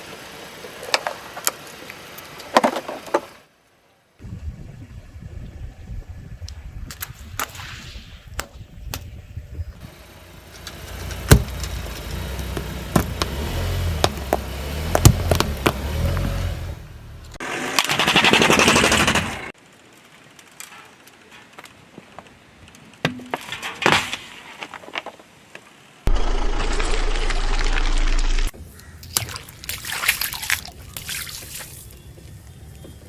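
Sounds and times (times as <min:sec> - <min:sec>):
engine and tyre rumble: 0:09.6 - 0:19.6
tyre crushing crunchy objects: 0:10.7 - 0:16.8.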